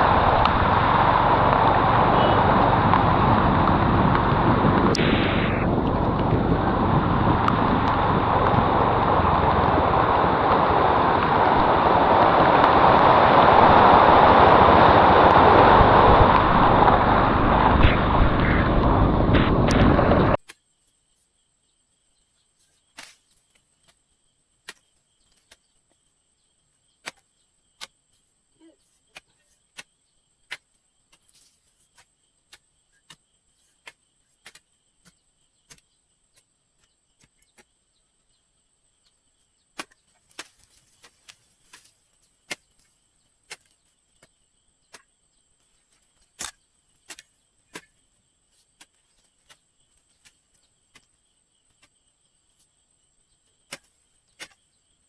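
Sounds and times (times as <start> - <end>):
faint high-pitched drone: 0.0 - 3.2.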